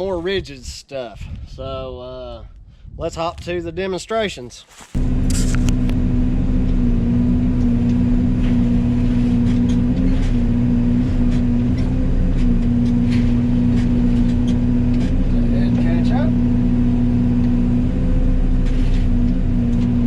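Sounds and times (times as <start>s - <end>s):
excavator mulcher droning hum: 5.0s - 20.0s.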